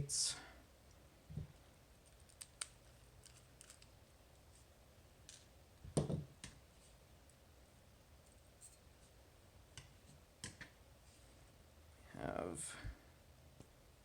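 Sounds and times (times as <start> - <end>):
lock pins and tools clicking: 2.1 - 3.9.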